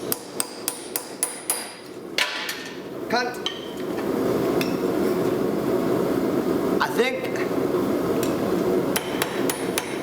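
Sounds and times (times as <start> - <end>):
hammer striking steel on anvil: 0.0 - 2.6, 8.2 - 10.0.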